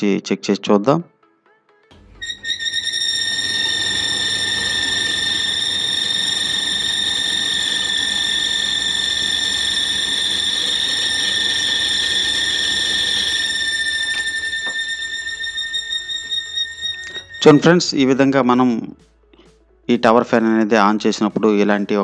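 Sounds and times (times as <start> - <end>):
fan motor squealing: 1.9 - 18.6
fan air rushing: 3.0 - 14.6.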